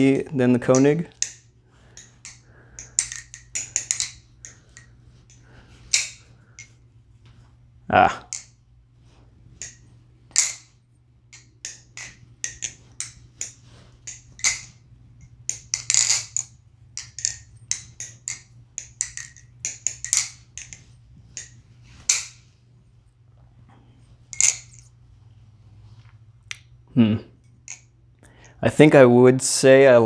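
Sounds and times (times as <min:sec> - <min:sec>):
faint low hum: 0:00.0 - 0:30.0
butterfly knife clicking and clacking: 0:02.0 - 0:06.7, 0:11.4 - 0:14.7, 0:15.5 - 0:20.8.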